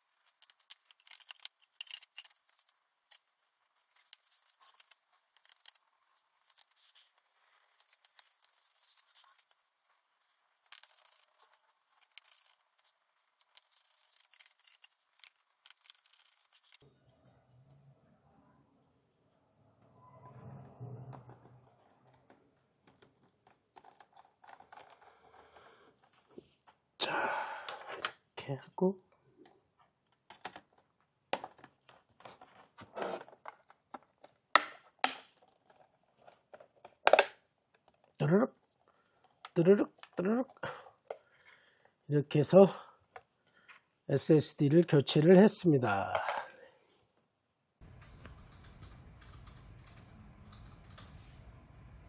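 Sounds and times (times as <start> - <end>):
small parts and tools clicking: 0.0 - 17.8, 22.2 - 26.8, 29.4 - 38.2, 47.8 - 52.0.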